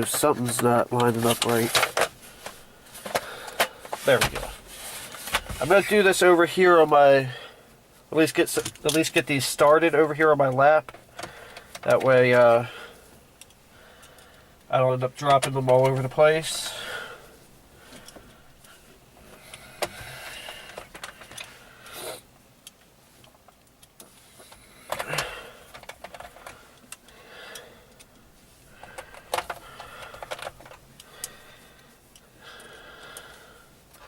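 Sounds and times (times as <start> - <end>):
plastic parts rustling: 0.0 - 5.8.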